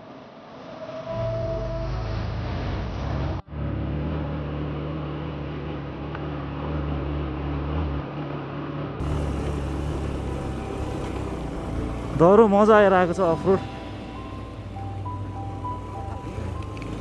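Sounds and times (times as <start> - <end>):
motorcycle engine running: 3.6 - 17.0.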